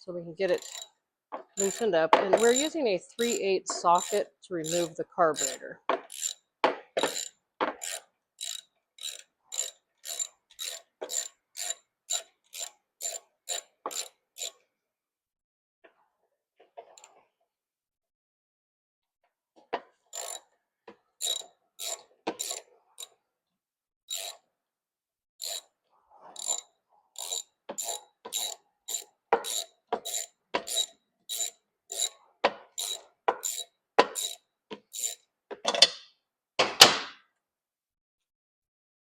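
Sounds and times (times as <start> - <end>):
ratchet wrench clicking: 0.5 - 0.9, 1.6 - 14.6, 20.1 - 20.4, 21.2 - 23.1, 24.1 - 24.4, 25.4 - 25.7, 26.4 - 35.2.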